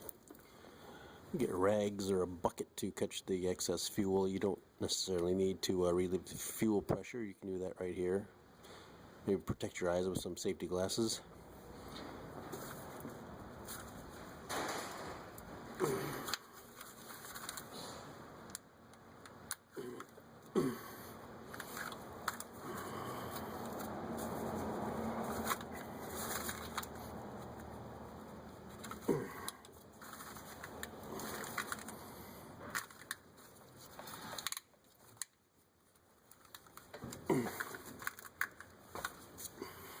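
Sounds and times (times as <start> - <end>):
rustling: 16.2 - 18.1, 21.5 - 39.7.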